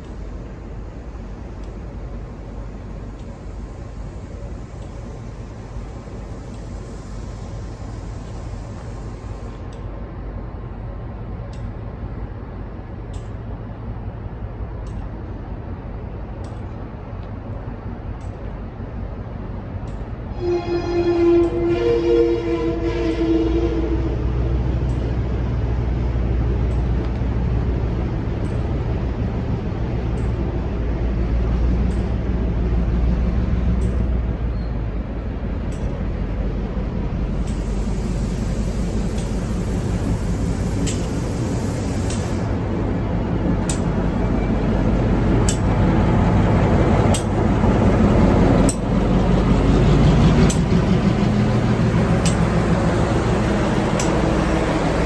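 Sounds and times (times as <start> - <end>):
diesel locomotive rumbling: 0.0 - 55.0
locomotive horn blast: 20.3 - 24.6.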